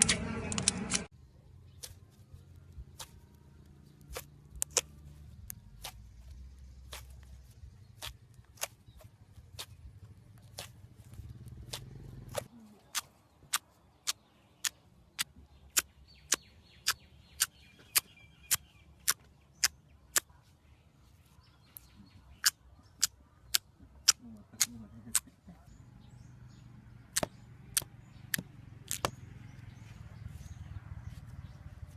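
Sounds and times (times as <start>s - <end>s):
slime clicking: 4.0s - 6.0s.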